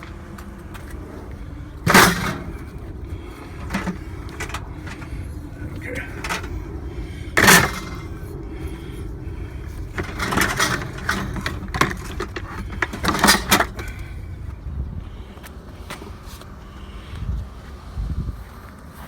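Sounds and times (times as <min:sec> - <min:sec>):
metal rattling and clattering: 0:00.0 - 0:14.3
vehicle low rumble: 0:00.0 - 0:19.0
metal scrap clanking: 0:01.8 - 0:09.0, 0:09.6 - 0:14.2.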